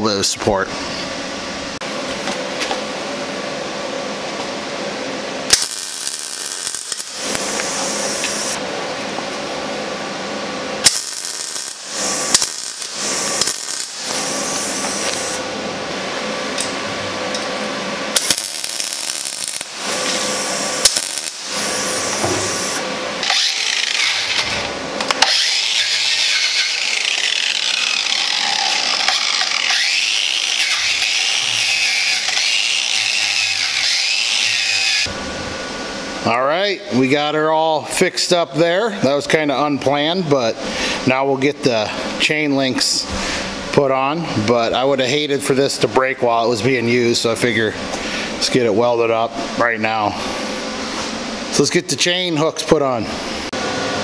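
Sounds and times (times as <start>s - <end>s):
welding hissing crackle: 5.5s - 8.6s, 10.8s - 15.5s, 18.1s - 35.1s
power tool grinding steel: 10.8s - 15.4s, 18.2s - 35.1s.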